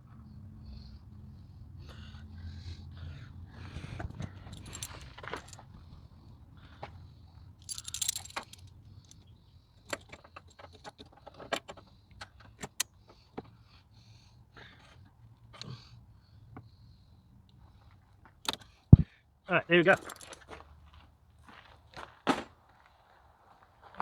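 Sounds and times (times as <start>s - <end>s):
metallic clicks of hand tools: 4.4s - 5.6s, 7.6s - 9.2s, 18.5s - 18.7s, 19.9s - 20.4s.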